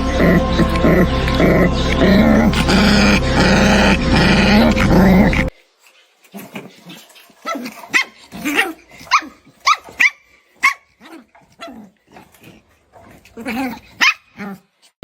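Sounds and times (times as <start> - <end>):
dog yapping: 1.9 - 5.5, 6.3 - 14.6.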